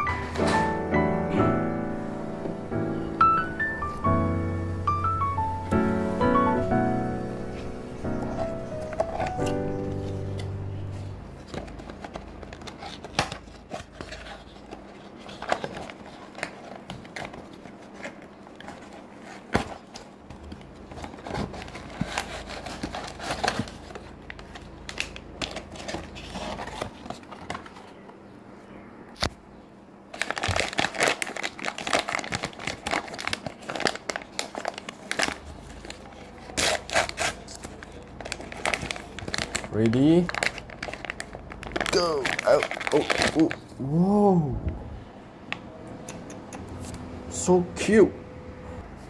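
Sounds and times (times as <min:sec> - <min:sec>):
packaging crinkling and tearing: 0:07.5 - 0:28.0, 0:30.1 - 0:43.9.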